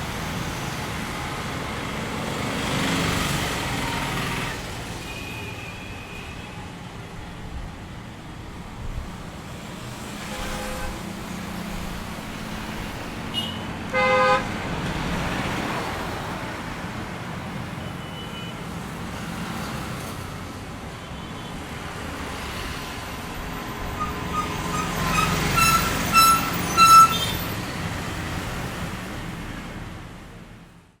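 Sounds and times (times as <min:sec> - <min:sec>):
road traffic passing: 0:00.0 - 0:31.0
vehicle horns honking: 0:10.3 - 0:11.0, 0:13.3 - 0:14.5, 0:23.8 - 0:27.6.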